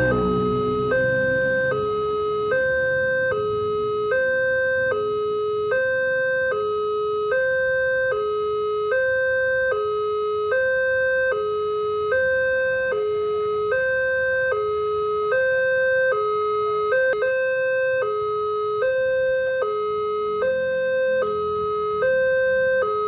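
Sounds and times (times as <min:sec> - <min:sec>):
two-tone crossing alarm: 0:00.0 - 0:23.0.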